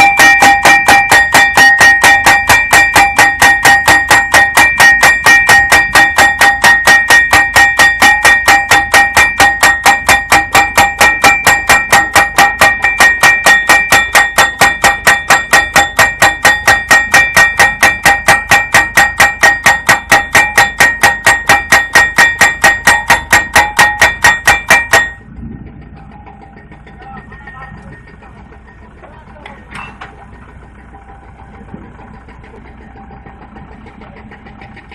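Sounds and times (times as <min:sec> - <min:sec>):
pile driver hammering steel: 0:00.0 - 0:25.3
rig engine running quietly: 0:00.0 - 0:34.9.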